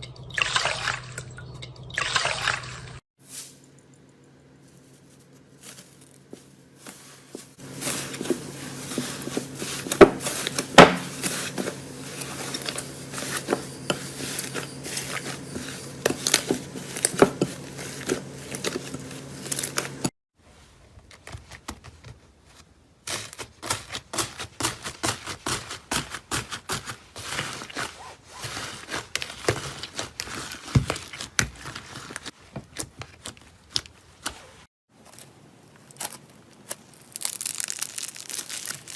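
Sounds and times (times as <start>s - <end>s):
slime squeezed by hand crackling: 36.6s - 38.9s.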